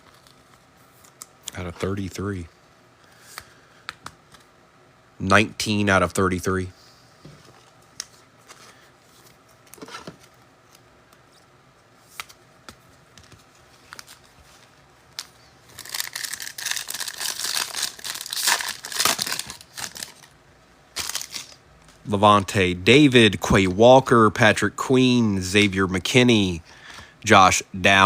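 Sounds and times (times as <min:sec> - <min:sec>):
foil wrapper tearing and crinkling: 0:15.1 - 0:20.3, 0:21.0 - 0:21.6.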